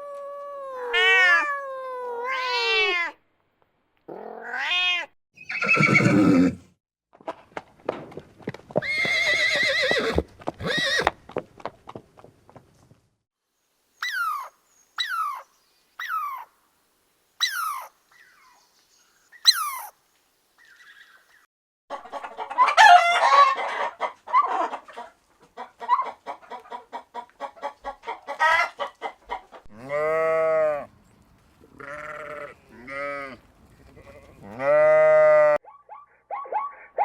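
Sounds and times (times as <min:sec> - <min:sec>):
chickens clucking and cackling: 0:21.9 - 0:29.7
sheep bleating: 0:29.7 - 0:30.9, 0:31.7 - 0:33.4, 0:34.0 - 0:35.6.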